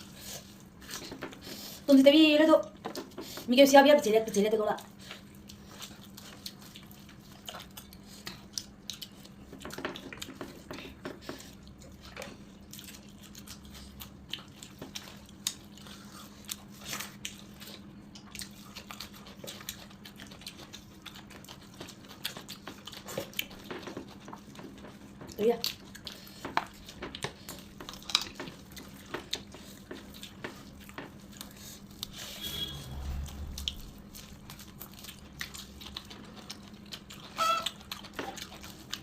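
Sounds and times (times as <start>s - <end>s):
person chewing: 0.0s - 1.9s, 4.8s - 39.0s
steady low hum: 10.9s - 39.0s.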